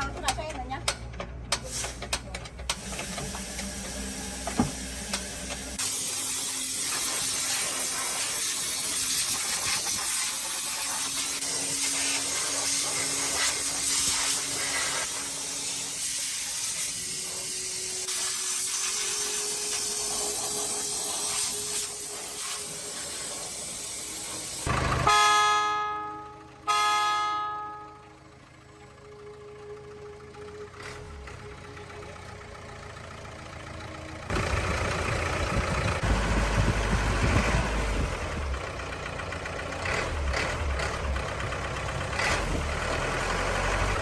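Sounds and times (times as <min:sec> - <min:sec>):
rushing air hiss: 0:02.8 - 0:24.7.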